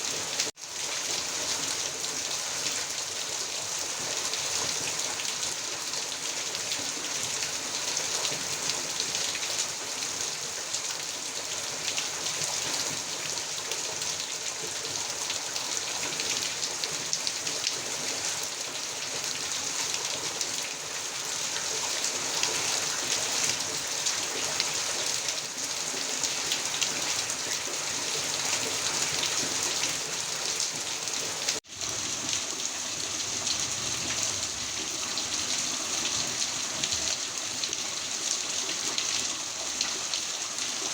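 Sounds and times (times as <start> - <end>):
heavy rain pouring: 19.9 - 40.9.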